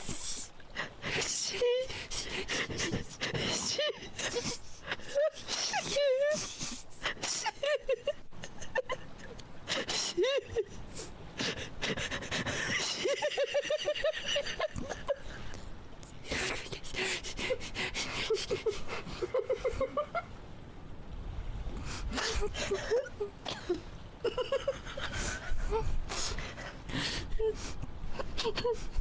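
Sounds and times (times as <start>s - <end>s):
breathy hissing: 0.0s - 7.5s.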